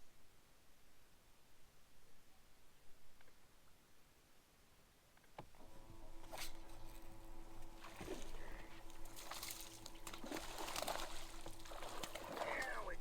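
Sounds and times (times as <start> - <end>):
electric motor humming: 5.5 - 13.0
water splashing against boat: 5.6 - 13.0.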